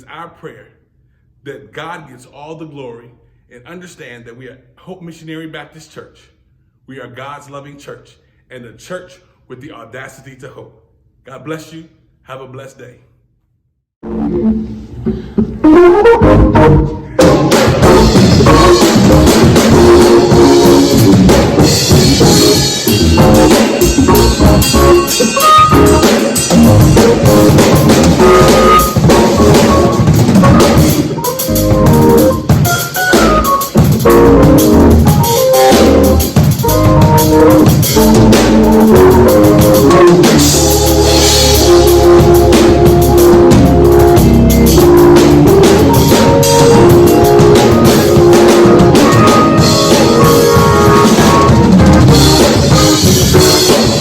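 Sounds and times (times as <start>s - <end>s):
sustained pitched notes: 14.0s - 54.0s
drum kit playing steady beat: 14.2s - 54.0s.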